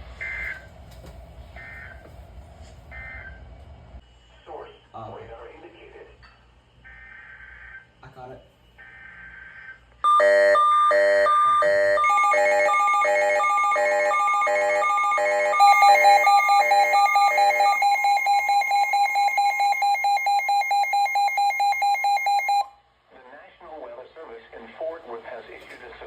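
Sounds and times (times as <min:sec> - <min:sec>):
electronic beeps: 0:10.0 - 0:22.7
steady two-note alarm tone: 0:10.1 - 0:22.7.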